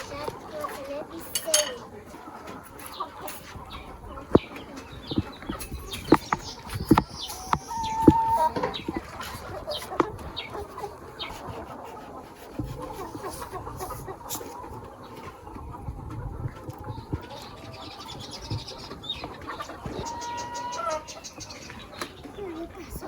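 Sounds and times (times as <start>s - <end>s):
chickens clucking: 0.0s - 23.0s
chicken held call: 7.2s - 8.8s, 20.0s - 21.2s.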